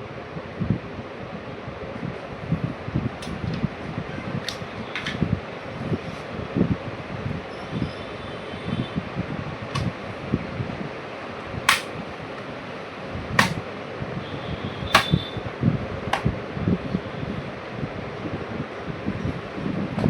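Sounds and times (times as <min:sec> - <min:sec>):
plastic clips snapping shut: 0:03.2 - 0:03.6, 0:11.7 - 0:11.9, 0:13.4 - 0:13.6, 0:15.0 - 0:15.2, 0:16.1 - 0:16.3.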